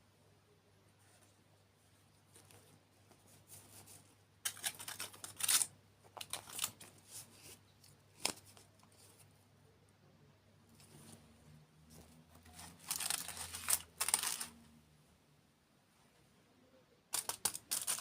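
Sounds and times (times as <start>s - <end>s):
food wrapper crinkling: 12.6s - 14.6s.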